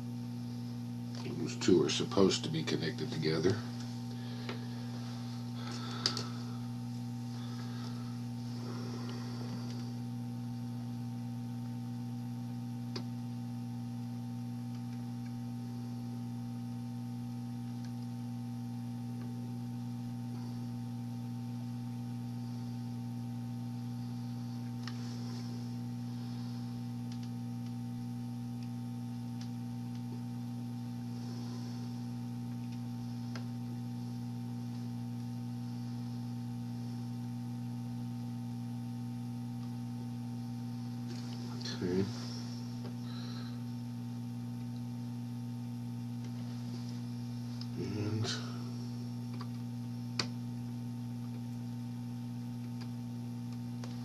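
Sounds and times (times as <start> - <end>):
electrical mains hum: 0.0 - 54.0
faint light clicks: 27.1 - 27.8.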